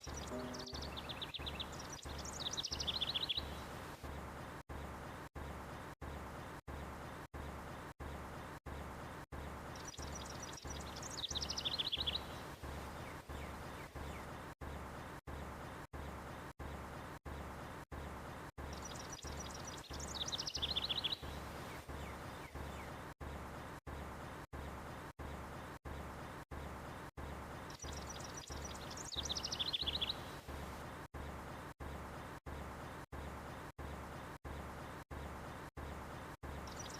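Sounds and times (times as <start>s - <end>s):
small bird singing: 0.0s - 3.7s, 9.8s - 14.3s, 18.6s - 23.0s, 27.7s - 30.4s, 36.5s - 36.9s
songbird chirping and trilling: 0.0s - 3.7s, 9.8s - 14.4s, 18.6s - 23.0s, 27.7s - 30.4s, 36.5s - 36.9s.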